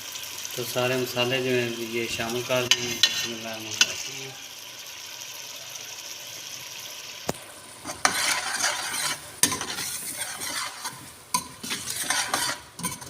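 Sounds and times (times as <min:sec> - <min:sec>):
gravy sizzling in a pan: 0:00.0 - 0:13.0
spoon stirring and scraping: 0:02.7 - 0:04.0, 0:07.8 - 0:13.0.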